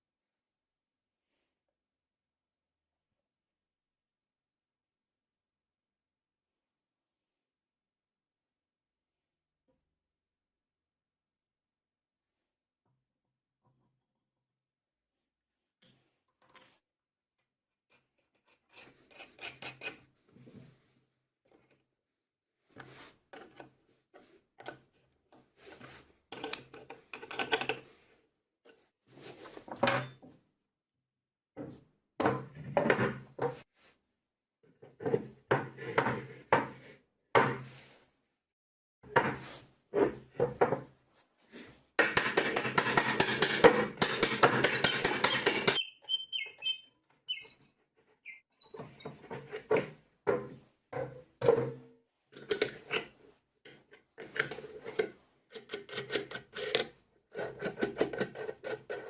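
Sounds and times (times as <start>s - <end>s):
tool scraping or grinding: 42.2s - 47.6s.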